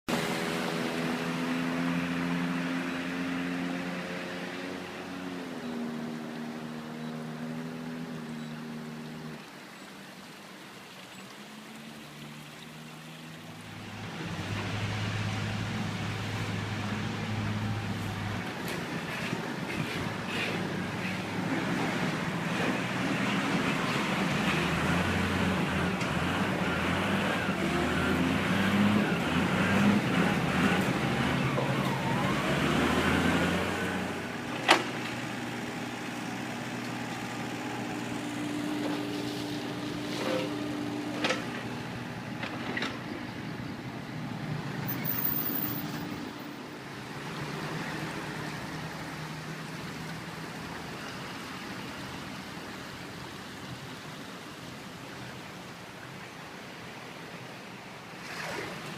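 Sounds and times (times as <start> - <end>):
traffic background: 0.0 - 58.9
large vehicle engine running: 13.7 - 32.6.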